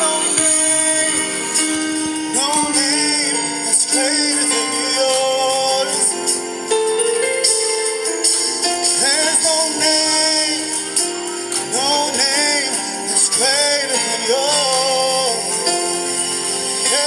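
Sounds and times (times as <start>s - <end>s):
worship song music: 0.0s - 17.0s.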